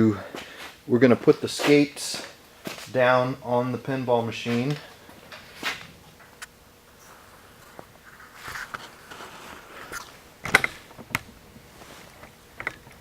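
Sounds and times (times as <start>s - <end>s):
soft rustle: 4.4s - 10.2s, 11.6s - 12.4s
small parts clicking and knocking: 12.6s - 13.0s.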